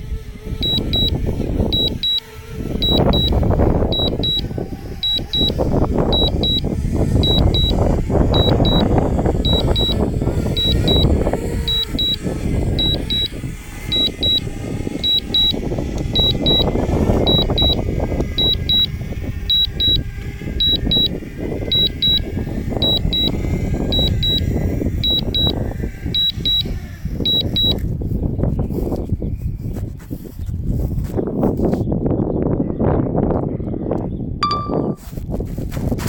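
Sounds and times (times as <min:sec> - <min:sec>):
wind rumbling on microphone: 0:00.0 - 0:36.0
short high double beeps: 0:00.6 - 0:02.2, 0:02.8 - 0:04.4, 0:05.0 - 0:05.6, 0:06.2 - 0:06.6, 0:07.2 - 0:07.8, 0:08.4 - 0:08.9, 0:09.5 - 0:10.0, 0:10.6 - 0:11.1, 0:11.7 - 0:12.2, 0:12.8 - 0:13.3, 0:13.9 - 0:14.4, 0:16.2 - 0:16.7, 0:17.3 - 0:17.8, 0:18.4 - 0:18.9, 0:19.5 - 0:20.0, 0:20.6 - 0:21.1, 0:21.7 - 0:23.3, 0:25.0 - 0:25.5, 0:34.4 - 0:35.0.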